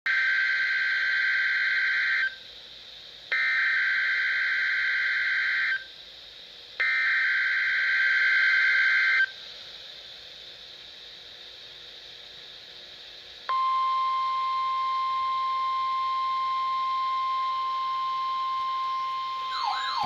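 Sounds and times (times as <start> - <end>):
low radio hiss: 7.6 - 20.0
digital data tone bursts: 18.9 - 20.0.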